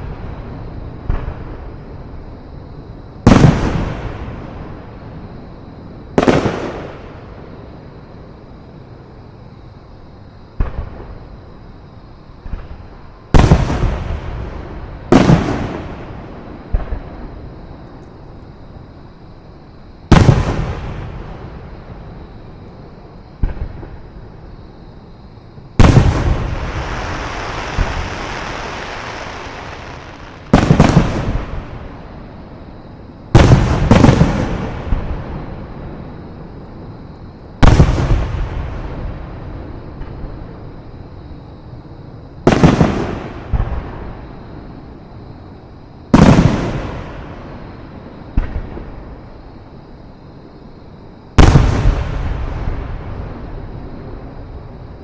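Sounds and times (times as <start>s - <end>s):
fireworks booms with echo: 0.0s - 2.1s, 3.2s - 5.0s, 6.1s - 7.5s, 10.6s - 11.4s, 12.4s - 17.6s, 20.1s - 22.3s, 23.3s - 24.2s, 25.8s - 32.4s, 33.3s - 36.1s, 37.6s - 40.6s, 42.4s - 44.9s, 46.1s - 49.3s, 51.4s - 54.9s
fireworks hissing crackle: 25.9s - 32.2s.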